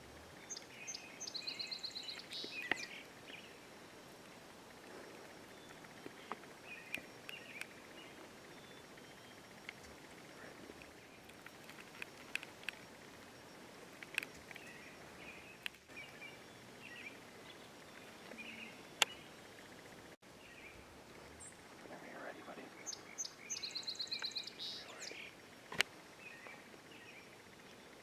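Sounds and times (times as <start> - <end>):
faint bird chirps: 0.2 - 25.6, 26.2 - 28.0
sharp clicks: 2.1 - 2.9, 4.2 - 13.2, 13.9 - 15.0, 15.6 - 16.0.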